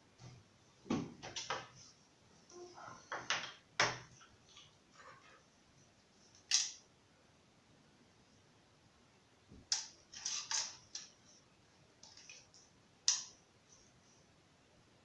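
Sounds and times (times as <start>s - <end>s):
laptop parts clicking and tapping: 12.0s - 13.4s.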